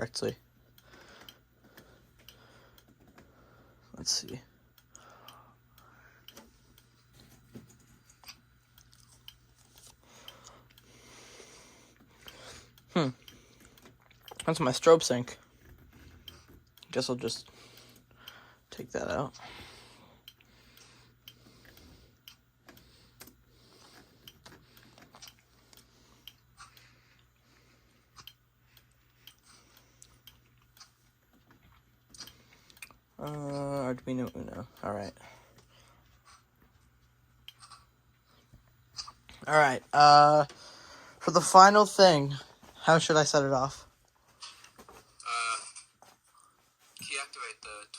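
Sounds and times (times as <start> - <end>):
low steady hum: 0.0 - 47.9.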